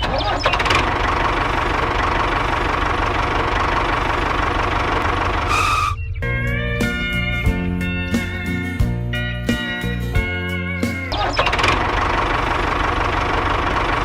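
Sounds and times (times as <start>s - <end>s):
small engine chugging: 0.0s - 7.2s, 11.1s - 14.0s
brief high tone: 5.5s - 6.4s.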